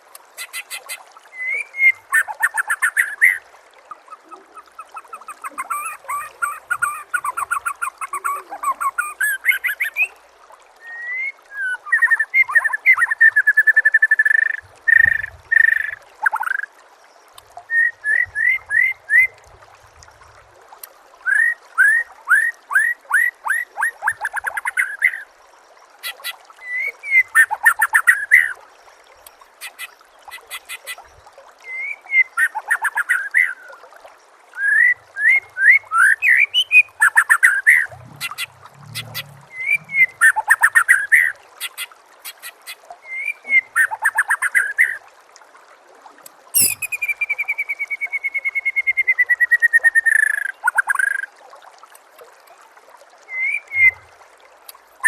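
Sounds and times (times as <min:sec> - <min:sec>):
songbird singing trills: 0:34.7 - 0:41.3, 0:46.6 - 0:49.0.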